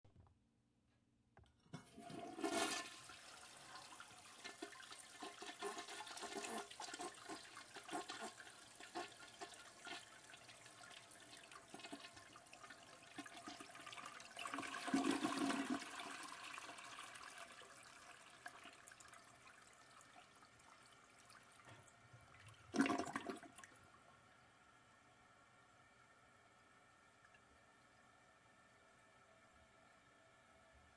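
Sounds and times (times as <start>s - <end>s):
toilet flushing: 1.7s - 24.0s.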